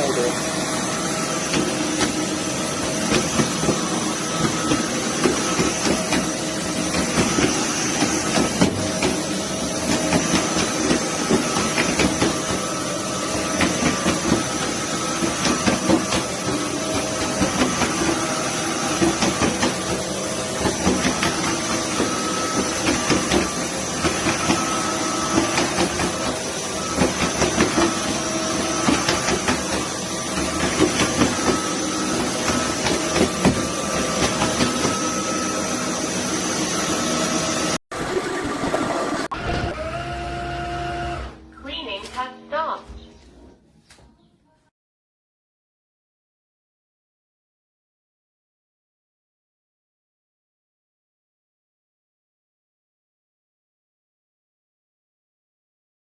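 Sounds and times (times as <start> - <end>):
floor vacuum motor whining: 0.0 - 42.0.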